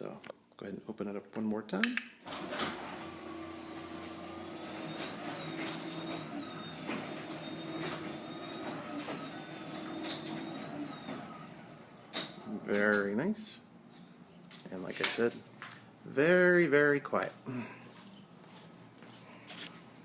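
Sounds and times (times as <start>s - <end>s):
garage door opener motor hum: 2.2s - 12.8s.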